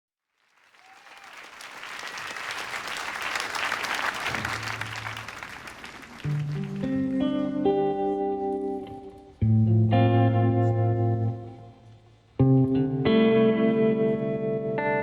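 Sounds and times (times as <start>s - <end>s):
audience applauding: 0.3s - 7.4s.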